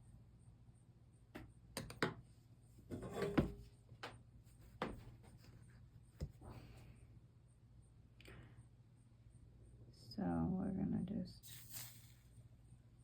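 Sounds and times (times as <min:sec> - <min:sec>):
tools clicking and knocking on bench: 0:01.4 - 0:02.2.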